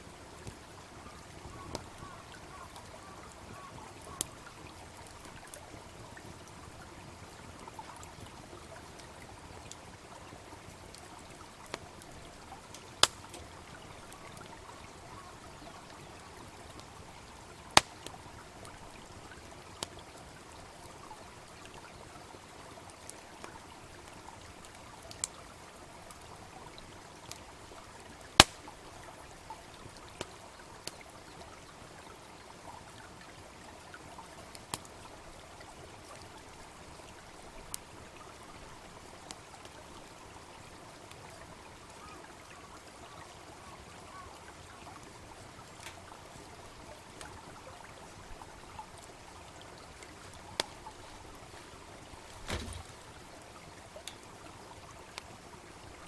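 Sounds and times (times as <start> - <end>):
brook babbling: 0.0 - 56.0
wood fire crackling and popping: 10.9 - 13.8, 17.7 - 18.8, 28.3 - 28.8, 45.6 - 46.1, 50.0 - 53.1.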